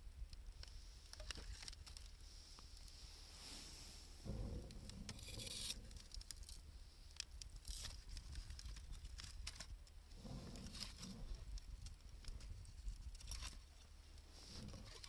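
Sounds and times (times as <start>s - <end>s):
wood fire crackling and popping: 0.1s - 15.0s
low rumble: 3.1s - 6.2s.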